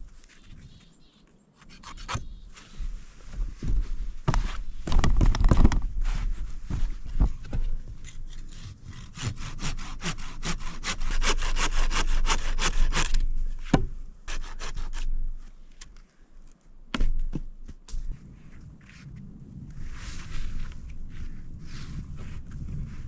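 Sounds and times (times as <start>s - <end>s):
hand saw cutting wood: 1.6s - 2.3s, 8.0s - 13.7s, 14.3s - 15.2s.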